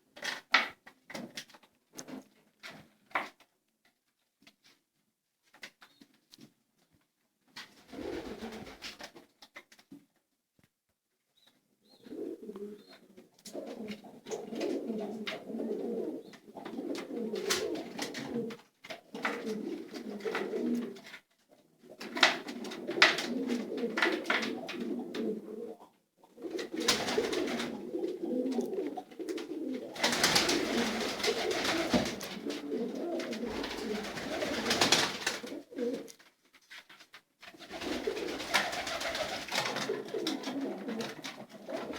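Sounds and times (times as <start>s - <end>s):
pigeons cooing: 11.9s - 21.0s, 22.6s - 36.1s, 37.7s - 41.9s.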